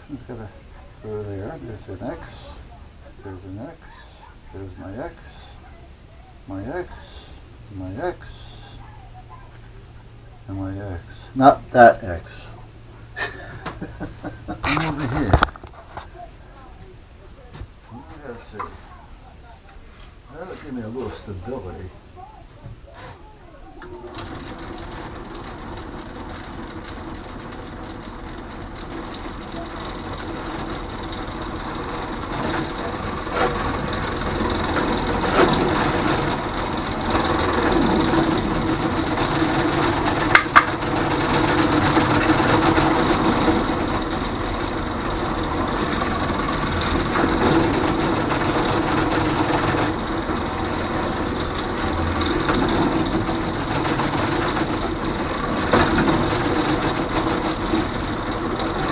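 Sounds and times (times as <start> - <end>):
drill press drilling: 23.8 - 58.9.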